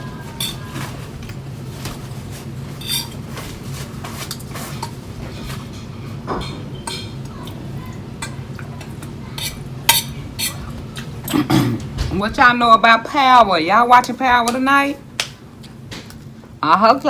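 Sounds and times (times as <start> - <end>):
steady low hum: 0.0 - 17.0
forks clinking on plates: 0.3 - 1.0, 2.8 - 3.3, 4.3 - 7.3, 8.2 - 11.4.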